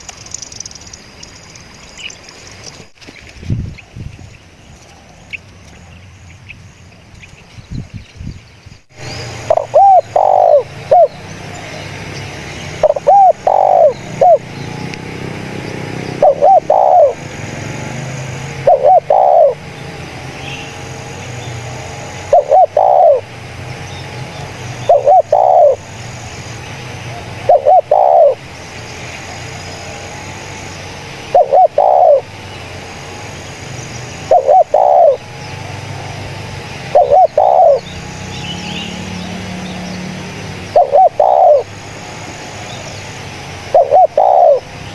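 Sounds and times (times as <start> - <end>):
dove cooing: 9.4 - 11.9, 12.7 - 14.6, 15.9 - 20.1, 21.8 - 23.4, 24.7 - 28.6, 31.1 - 32.5, 33.8 - 35.4, 36.8 - 38.1, 40.6 - 41.8, 43.6 - 44.8.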